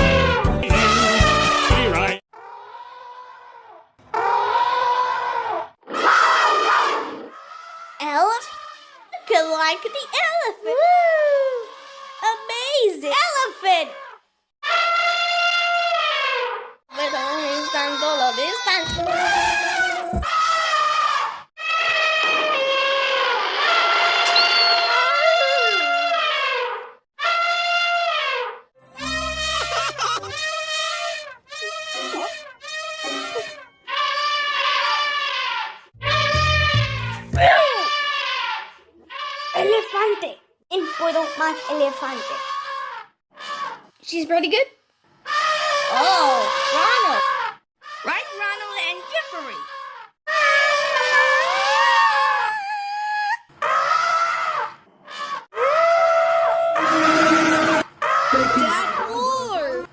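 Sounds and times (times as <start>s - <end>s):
elephant trumpeting: 0.0s - 9.2s, 14.0s - 43.9s, 45.2s - 59.8s.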